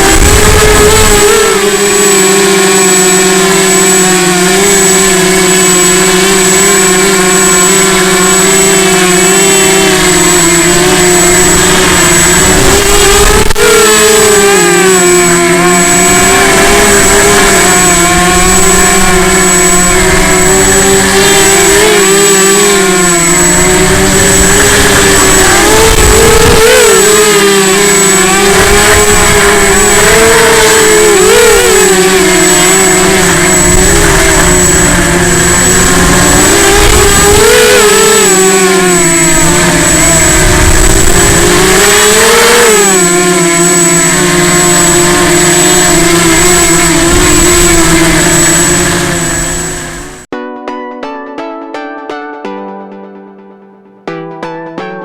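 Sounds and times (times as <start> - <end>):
drone motors whining: 0.0 - 50.3.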